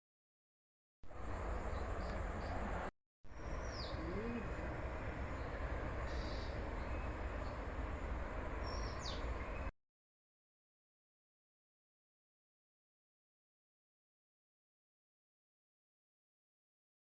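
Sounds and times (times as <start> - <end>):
birds chirping: 1.1 - 9.7
low background rumble: 1.1 - 9.7.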